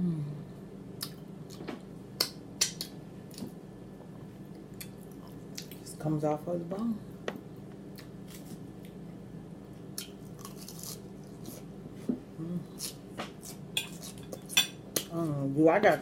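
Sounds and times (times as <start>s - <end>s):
person humming mm: 0.0s - 0.6s, 12.3s - 13.0s
chewing and lip-smacking: 4.5s - 5.8s.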